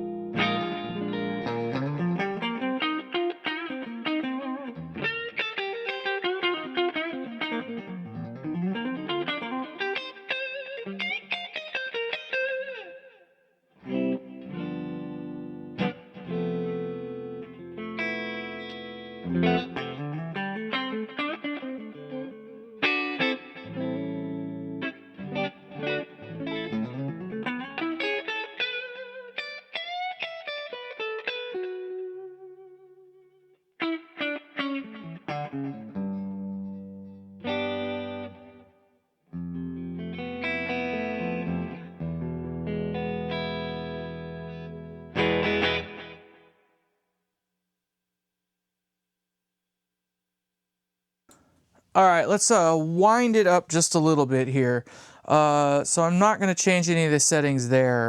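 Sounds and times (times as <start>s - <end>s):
electric guitar with reverb: 0.0s - 46.9s, 52.1s - 58.0s.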